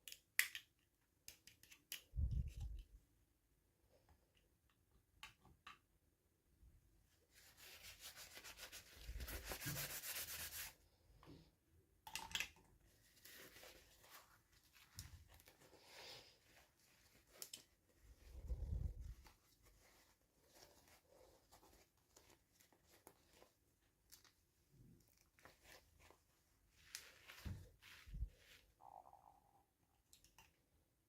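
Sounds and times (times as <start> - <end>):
hands rubbing on toy packaging: 7.3 - 10.8, 13.1 - 23.6.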